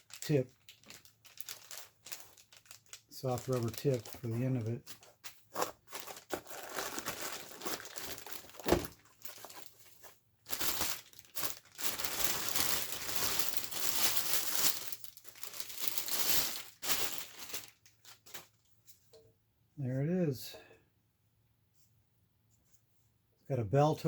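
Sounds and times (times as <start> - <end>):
packaging rustling and crinkling: 0.0 - 18.7.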